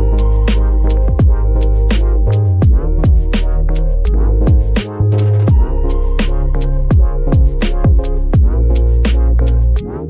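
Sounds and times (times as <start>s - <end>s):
music with deep bass beat: 0.0s - 10.0s.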